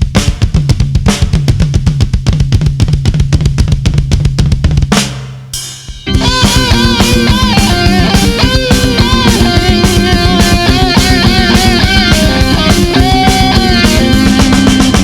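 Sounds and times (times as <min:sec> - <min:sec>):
fast drum-kit pattern: 0:00.0 - 0:15.0
rock band with lead melody: 0:05.6 - 0:15.0
held bass note: 0:06.1 - 0:15.0.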